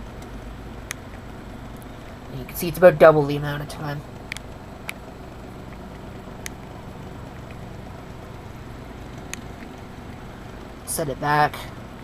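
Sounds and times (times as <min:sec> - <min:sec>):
low room noise: 0:00.0 - 0:12.0.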